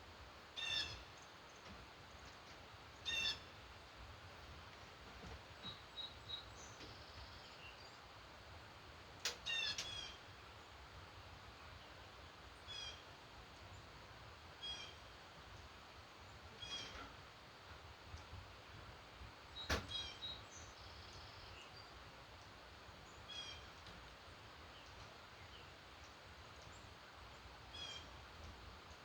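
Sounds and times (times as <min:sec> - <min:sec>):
faint steady background hiss: 0:00.0 - 0:29.0
wild birds calling: 0:00.6 - 0:01.7, 0:03.0 - 0:03.6, 0:16.6 - 0:17.2.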